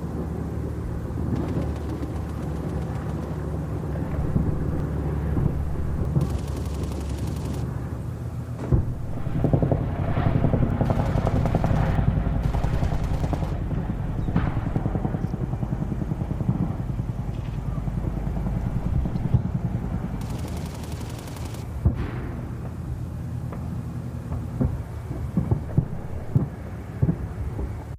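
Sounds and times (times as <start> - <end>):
low rumble: 0.0 - 27.8
machine-gun fire: 1.3 - 3.4, 6.1 - 7.7, 8.7 - 16.8, 20.2 - 22.4.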